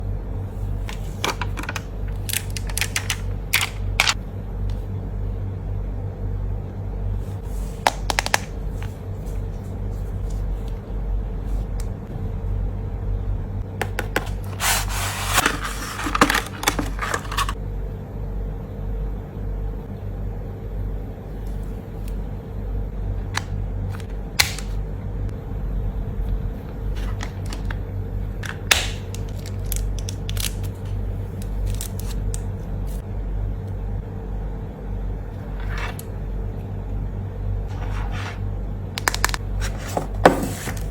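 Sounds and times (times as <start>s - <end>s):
steady low hum: 0.0s - 40.9s
packaging rustling: 0.9s - 4.2s, 14.2s - 17.6s, 28.4s - 32.5s
packaging clicks and taps: 7.8s - 8.9s, 28.4s - 30.8s, 39.0s - 39.4s.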